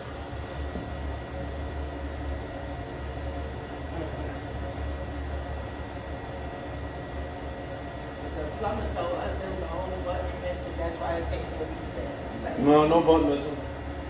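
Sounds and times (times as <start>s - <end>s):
fan machine humming: 0.0s - 14.0s.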